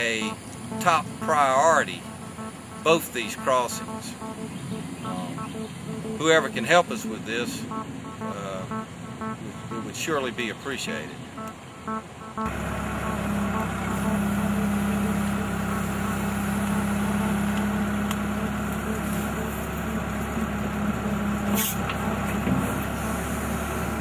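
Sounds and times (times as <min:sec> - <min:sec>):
heavy engine running: 0:11.4 - 0:24.0.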